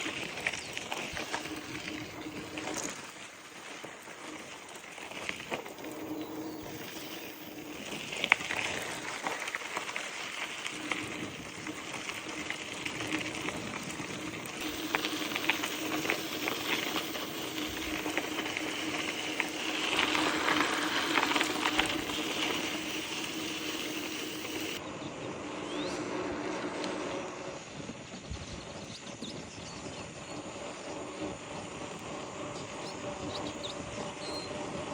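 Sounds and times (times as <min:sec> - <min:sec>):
small clicks and rattles: 0:00.0 - 0:24.8
bicycle tyres on gravel: 0:00.0 - 0:24.9, 0:26.0 - 0:34.9
steady hum: 0:05.4 - 0:27.9.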